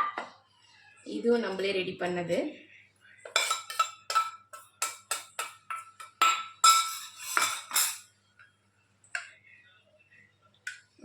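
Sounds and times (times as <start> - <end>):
metal spoon tapping metal bowl: 3.3 - 8.0.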